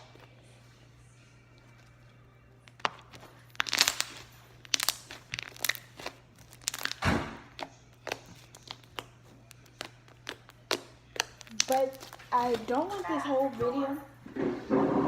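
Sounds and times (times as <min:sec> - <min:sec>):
slime squishing and crackling: 0:02.6 - 0:13.6.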